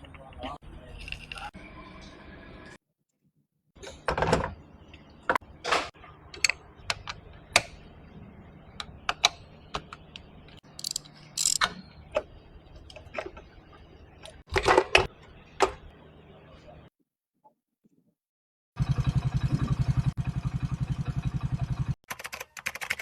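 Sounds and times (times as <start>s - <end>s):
metal tools clicking and clinking: 10.6s - 11.8s.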